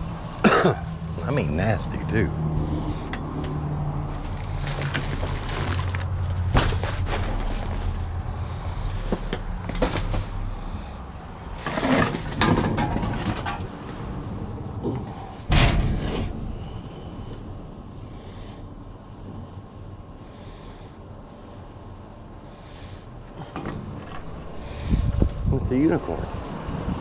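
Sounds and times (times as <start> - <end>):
vehicle engine idling: 0.0 - 12.3
knocks and clatters: 4.2 - 8.1, 9.0 - 10.5, 11.6 - 14.0.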